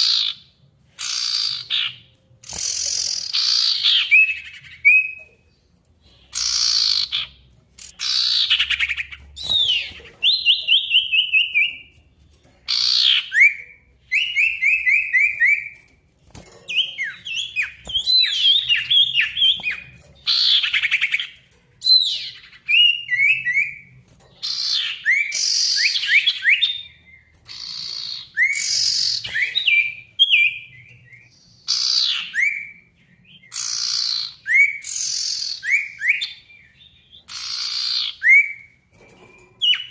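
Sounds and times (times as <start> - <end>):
songbird singing: 0.0 - 15.9, 16.7 - 39.9.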